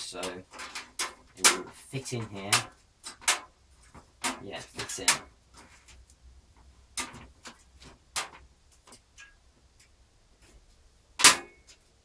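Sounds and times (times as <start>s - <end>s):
metal shield snapping into place: 11.2s - 11.6s.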